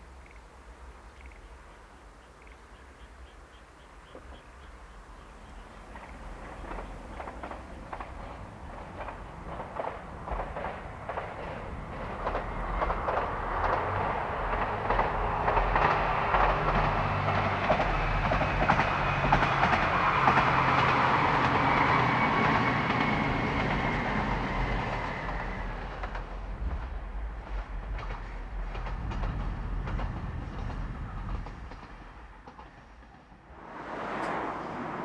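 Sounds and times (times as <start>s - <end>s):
train wheels clicking over rail joints: 5.6s - 35.0s
low engine hum: 33.5s - 35.0s.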